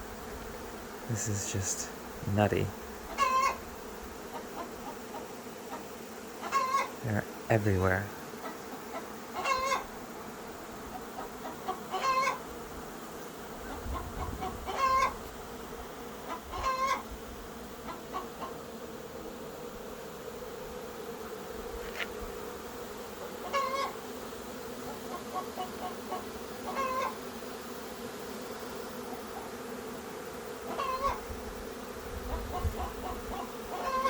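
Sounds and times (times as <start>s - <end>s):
bee swarm humming: 0.0s - 34.0s
chickens clucking: 3.1s - 3.6s, 4.3s - 6.9s, 8.4s - 9.9s, 10.9s - 12.4s, 13.6s - 15.2s, 16.2s - 17.0s, 17.8s - 18.6s, 23.2s - 24.0s, 24.9s - 27.2s, 30.7s - 31.2s, 32.3s - 34.0s.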